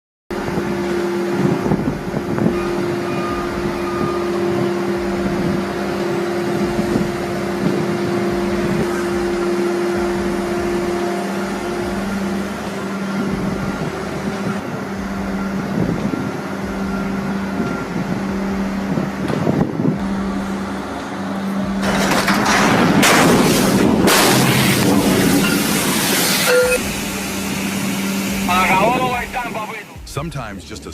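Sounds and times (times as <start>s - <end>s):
heavy machine engine droning: 0.3s - 30.9s
rough burst of noise: 21.6s - 30.4s.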